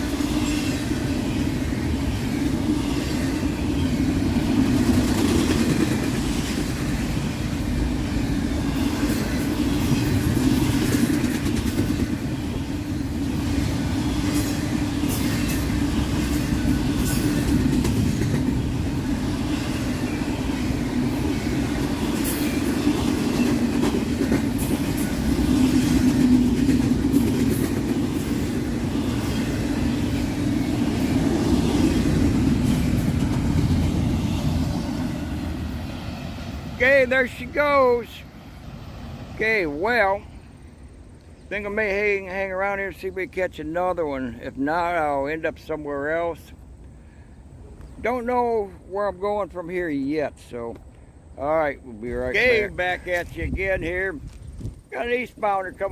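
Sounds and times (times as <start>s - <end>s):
train wheels rumbling on rails: 0.0s - 55.9s
wheels clicking and clacking: 8.8s - 19.8s.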